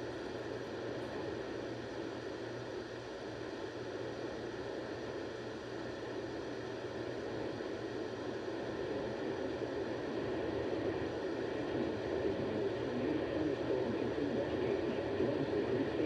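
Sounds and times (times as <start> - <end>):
radio static hiss: 10.0 - 16.0.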